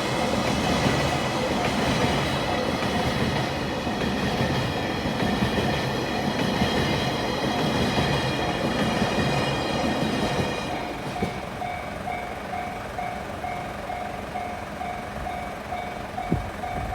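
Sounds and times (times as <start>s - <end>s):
freight train rumbling over crossing: 0.0s - 16.9s
level crossing warning bell: 0.0s - 16.9s.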